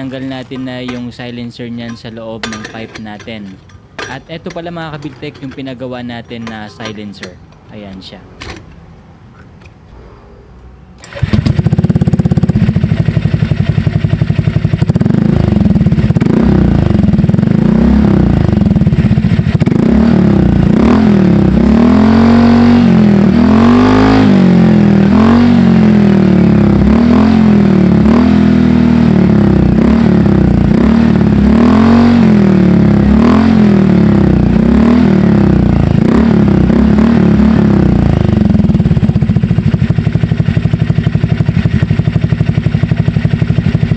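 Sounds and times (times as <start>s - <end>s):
scooter engine revving: 11.0s - 43.9s.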